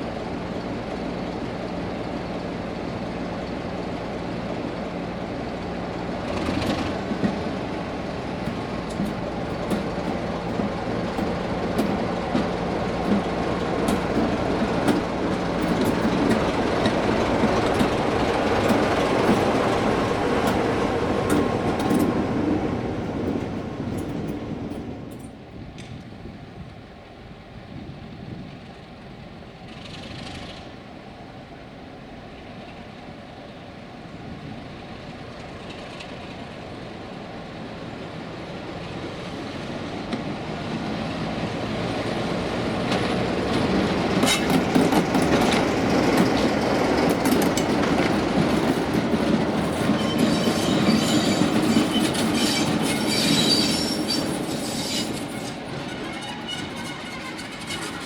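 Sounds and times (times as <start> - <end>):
diesel locomotive passing: 0.0 - 58.0
wheel clicks over rail joints: 6.2 - 22.3, 42.8 - 58.0.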